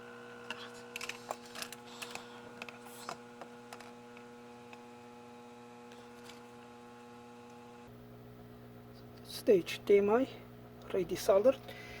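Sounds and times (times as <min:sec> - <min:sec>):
faint mains hum: 0:00.0 - 0:12.0.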